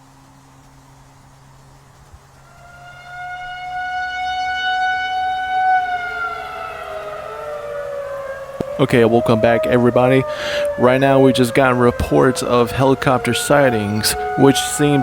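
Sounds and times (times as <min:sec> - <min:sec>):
warning siren wailing: 0:02.3 - 0:15.0.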